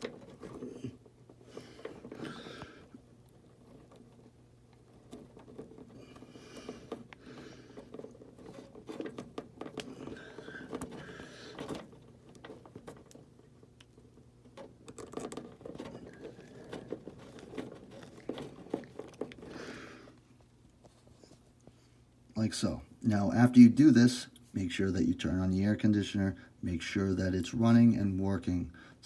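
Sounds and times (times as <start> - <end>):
wires clicking and rustling: 0.0 - 22.4.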